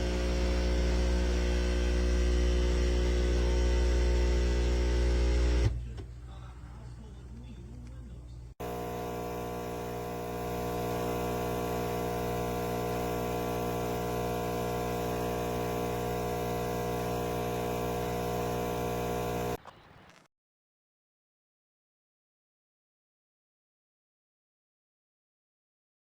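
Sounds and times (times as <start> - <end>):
coffee machine pump buzzing: 0.0 - 5.8, 8.6 - 19.6.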